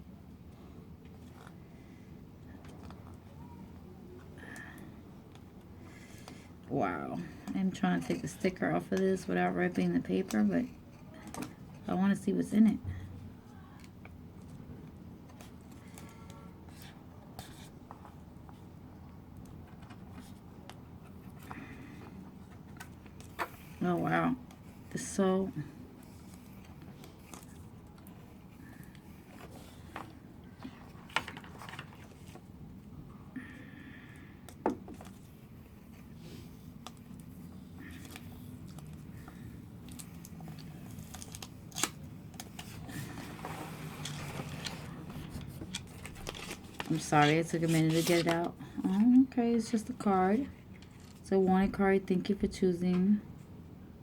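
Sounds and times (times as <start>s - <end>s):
paper rustling and scratching: 26.0s - 32.5s, 34.9s - 49.2s.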